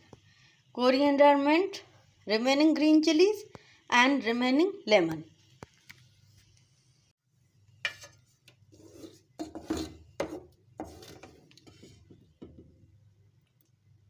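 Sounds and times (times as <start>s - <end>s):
metal spoon scraping pans: 7.8s - 12.2s.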